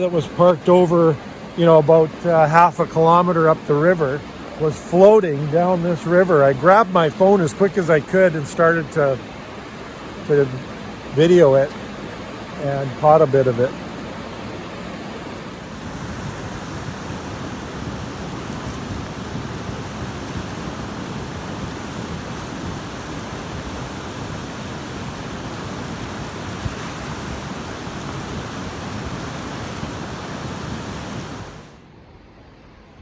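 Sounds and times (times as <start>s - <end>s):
river water rushing: 0.0s - 31.9s.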